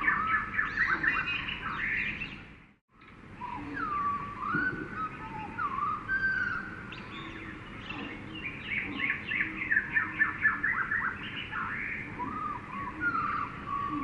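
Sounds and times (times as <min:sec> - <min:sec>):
loud bird chirps: 0:00.0 - 0:02.5, 0:03.4 - 0:14.0
gliding whistled bird notes: 0:03.4 - 0:14.0.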